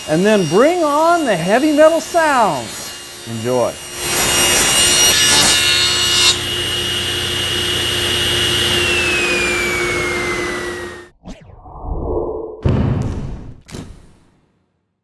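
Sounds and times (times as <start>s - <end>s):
power tool cutting wood: 0.0s - 11.1s
motor whine winding down: 6.4s - 12.1s.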